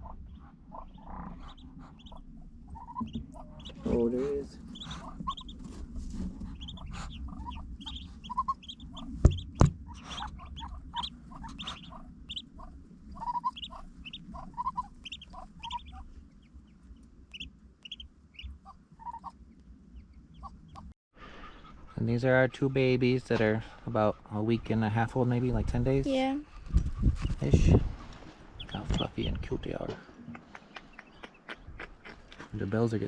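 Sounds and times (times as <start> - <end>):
low handling rumble: 0.0 - 20.9
ducklings peeping: 0.0 - 32.6
sharp knocks: 9.2 - 9.9.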